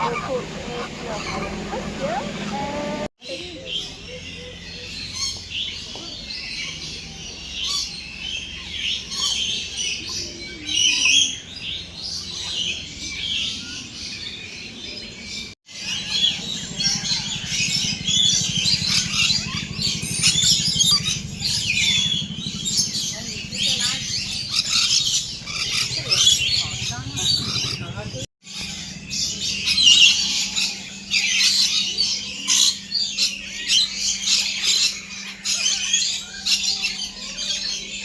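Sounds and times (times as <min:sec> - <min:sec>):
low steady hum: 0:00.0 - 0:03.1
many birds chirping: 0:00.0 - 0:38.0.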